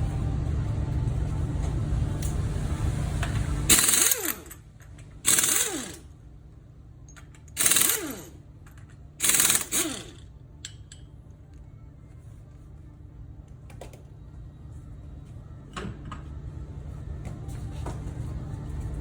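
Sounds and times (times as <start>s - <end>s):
steady low hum: 0.0s - 19.0s
power tool whining: 3.7s - 4.6s, 5.3s - 6.1s, 7.6s - 8.3s, 9.2s - 10.2s.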